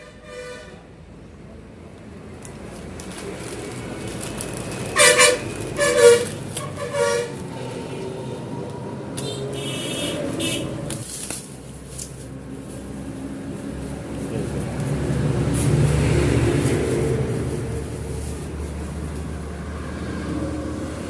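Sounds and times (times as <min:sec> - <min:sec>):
vehicle horn honking: 0:00.0 - 0:00.9, 0:04.9 - 0:07.6, 0:09.2 - 0:10.9
road traffic: 0:00.0 - 0:21.0.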